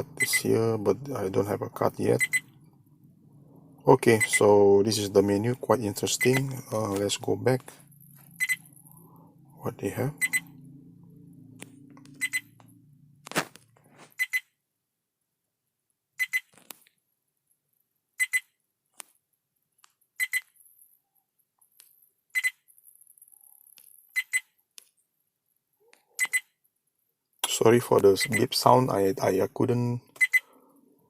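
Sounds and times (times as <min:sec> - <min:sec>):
faint low hum: 0:00.0 - 0:14.2
high double beep: 0:08.4 - 0:08.7, 0:10.2 - 0:10.6, 0:12.2 - 0:12.6.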